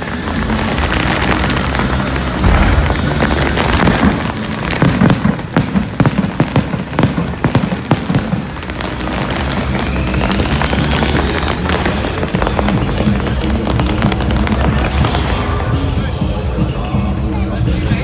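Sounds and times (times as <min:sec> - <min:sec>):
firework bangs and crackles: 0:00.0 - 0:18.0
firework crackling hiss: 0:00.0 - 0:18.0
faint rising firework whistles: 0:08.7 - 0:16.7.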